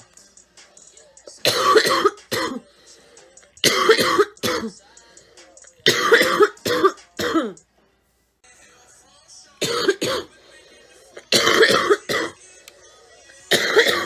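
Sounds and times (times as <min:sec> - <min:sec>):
girl coughing: 0:01.4 - 0:02.6, 0:03.6 - 0:04.8, 0:05.8 - 0:07.6, 0:09.6 - 0:10.3, 0:11.3 - 0:12.4, 0:13.5 - 0:14.0.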